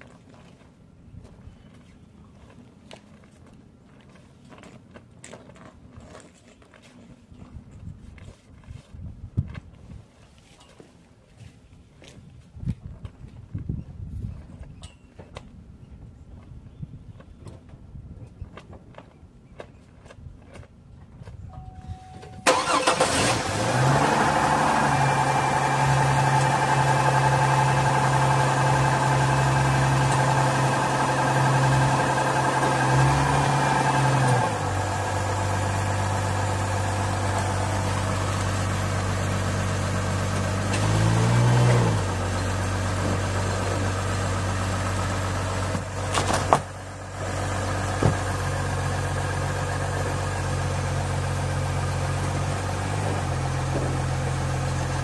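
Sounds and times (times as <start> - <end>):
engine starting and idling: 22.0 - 41.1.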